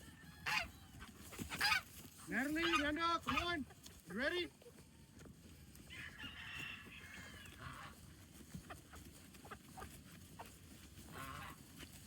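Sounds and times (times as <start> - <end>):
faint farm animal calls: 0.0 - 12.0.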